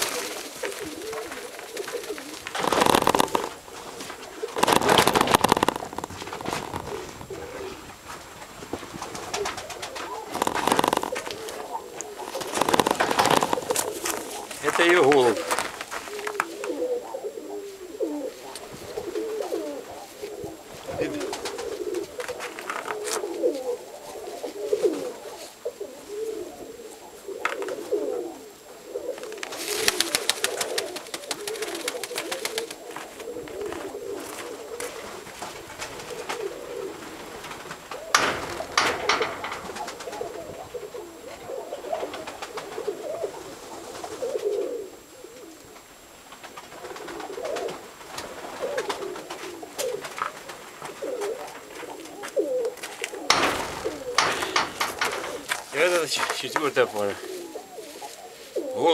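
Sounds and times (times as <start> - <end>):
pigeons cooing: 0.0 - 58.9
rustle of movement: 0.0 - 58.9
sharp wing flutter or knock: 2.2 - 3.6, 4.6 - 7.4, 9.0 - 11.6, 12.3 - 14.4, 37.4 - 40.4, 53.3 - 55.7.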